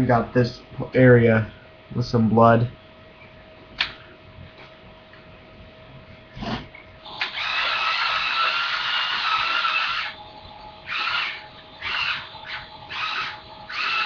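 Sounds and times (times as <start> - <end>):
toy chainsaw buzzing: 7.2 - 10.2, 10.9 - 14.0.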